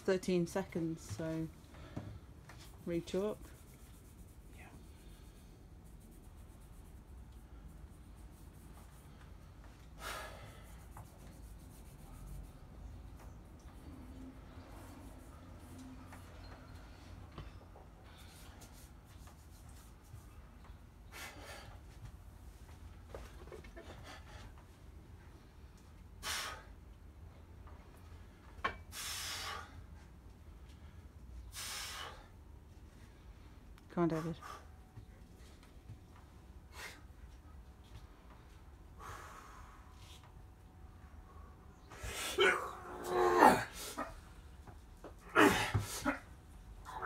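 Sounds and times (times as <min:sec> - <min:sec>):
hands rubbing with chalk: 0:02.5 - 0:09.3, 0:10.6 - 0:16.3, 0:18.3 - 0:20.5
man's forceful breaths: 0:08.9 - 0:11.0.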